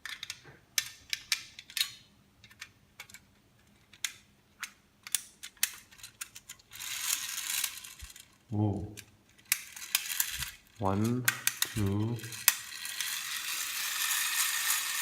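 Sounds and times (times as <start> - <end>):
metallic clicks of wind-up toy: 3.9 - 8.3, 9.0 - 15.0.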